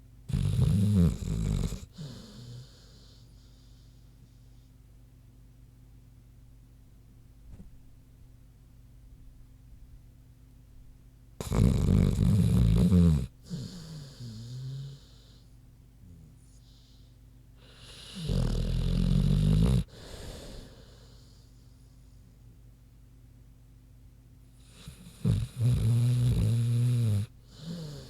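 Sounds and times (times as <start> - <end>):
dog snoring: 0.3 - 3.8, 11.4 - 15.4, 17.6 - 21.6, 24.6 - 28.0.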